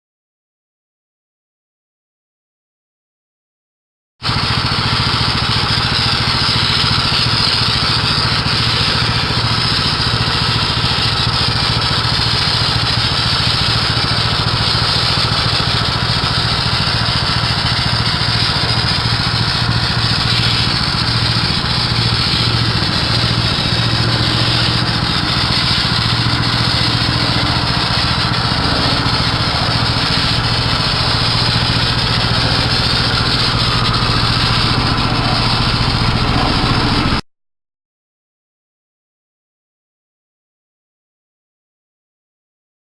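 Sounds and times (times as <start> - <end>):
engine running steadily: 4.2 - 37.2.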